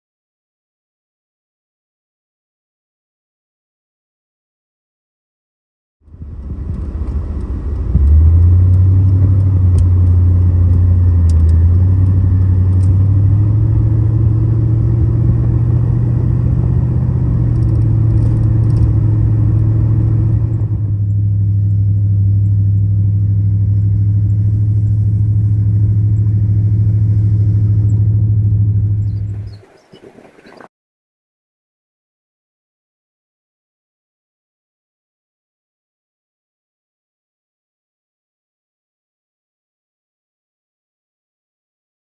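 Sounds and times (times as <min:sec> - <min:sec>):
engine low rumble: 0:06.0 - 0:30.7.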